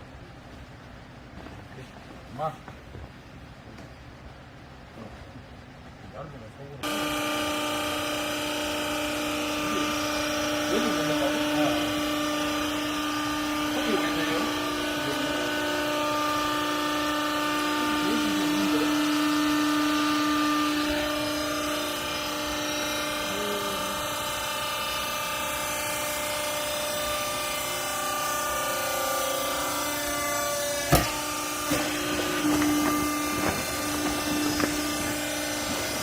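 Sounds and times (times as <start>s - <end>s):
machine motor humming: 6.8s - 36.0s
sharp machine knocks: 30.8s - 35.0s.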